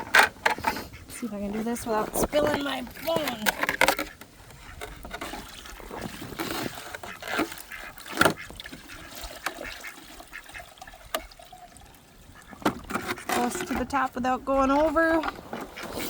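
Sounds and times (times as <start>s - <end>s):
ducks quacking: 0.7s - 11.5s, 12.2s - 16.0s
water sloshing and pouring: 4.8s - 16.0s.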